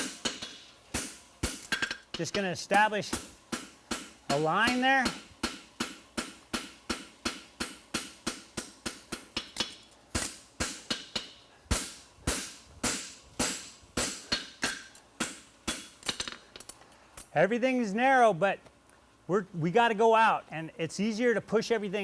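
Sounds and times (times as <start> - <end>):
hammer striking horseshoe on anvil: 0.0 - 16.4.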